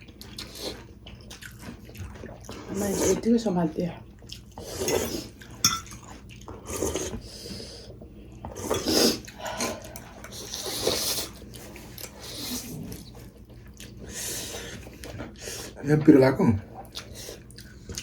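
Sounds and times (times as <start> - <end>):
cutlery clinking on dishes: 4.8 - 6.1.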